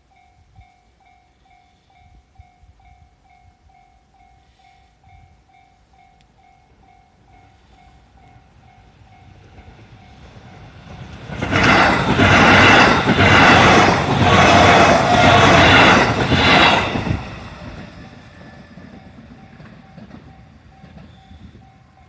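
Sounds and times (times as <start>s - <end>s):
electric train passing: 0.0s - 22.0s
train wheels clattering over rail joints: 9.4s - 21.8s.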